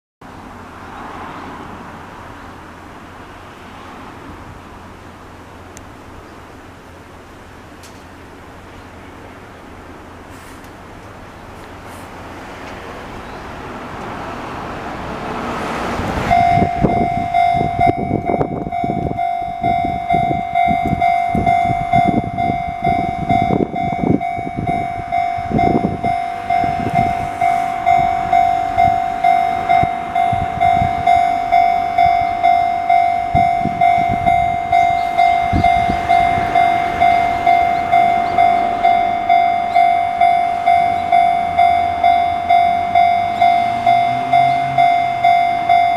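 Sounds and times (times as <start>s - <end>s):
train rumble: 0.2s - 45.9s
level crossing warning bell: 15.4s - 45.9s.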